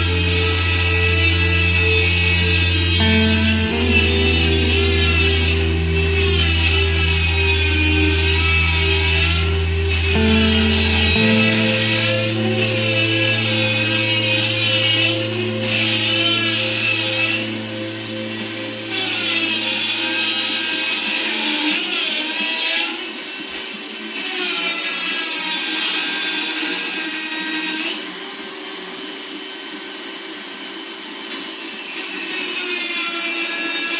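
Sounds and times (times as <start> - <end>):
low hum: 0.0 - 21.5.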